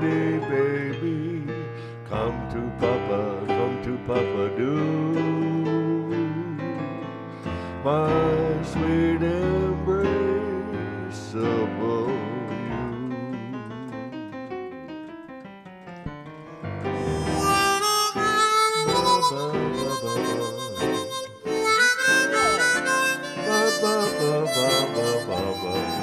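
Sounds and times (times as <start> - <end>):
keyboard playing single notes: 0.0 - 26.0
harmonica melody: 16.7 - 26.0.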